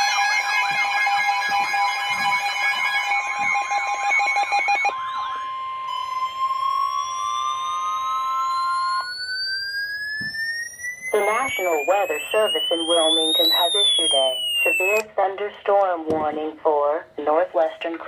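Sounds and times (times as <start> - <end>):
tone rising in pitch: 0.0 - 15.1
steady electronic alert tones: 0.0 - 15.2
fast warbling tone: 2.8 - 15.0.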